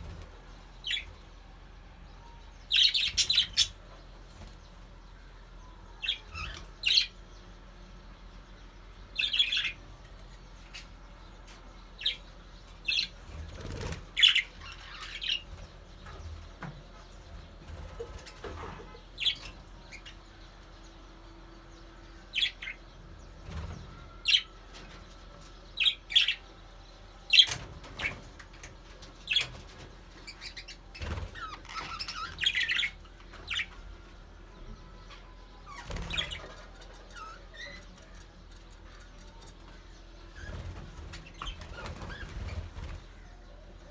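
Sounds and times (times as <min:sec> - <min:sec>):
budgerigars chirping: 0:02.7 - 0:04.0, 0:12.0 - 0:15.7, 0:25.8 - 0:26.4, 0:30.2 - 0:33.8.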